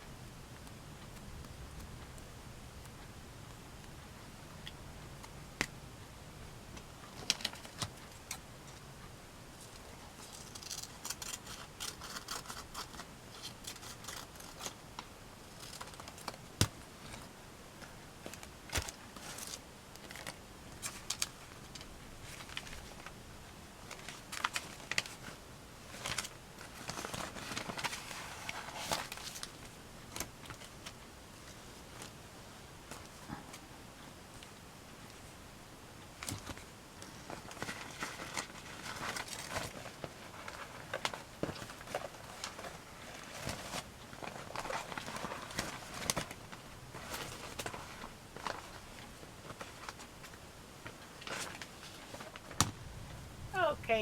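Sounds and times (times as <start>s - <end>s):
paper rustling: 23.8s - 30.8s, 36.2s - 52.9s.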